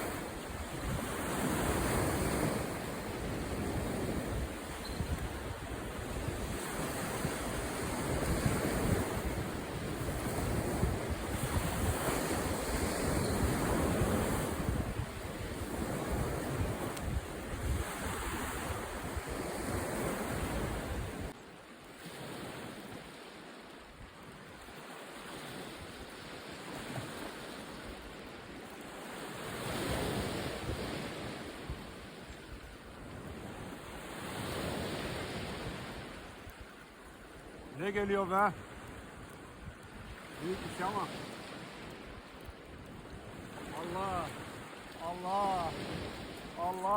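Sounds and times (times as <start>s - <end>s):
wind buffeting microphone: 0.0s - 21.3s, 38.5s - 46.9s
sea waves: 0.0s - 46.9s.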